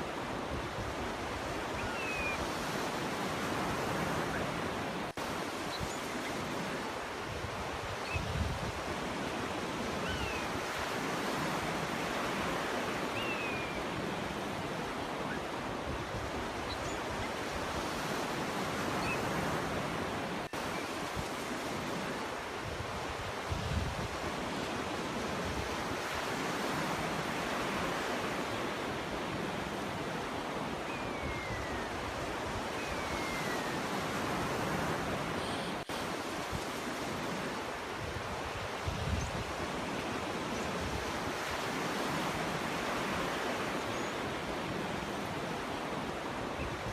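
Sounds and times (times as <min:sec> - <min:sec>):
sea surf washing ashore: 0:00.0 - 0:46.9
faint short bird calls: 0:35.2 - 0:35.9.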